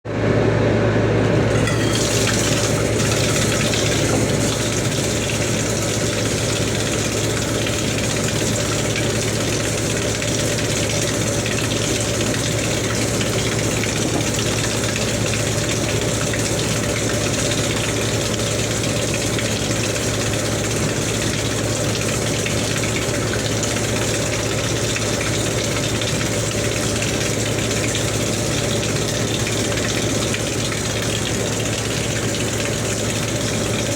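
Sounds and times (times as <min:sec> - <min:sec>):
water running: 0:01.5 - 0:33.9.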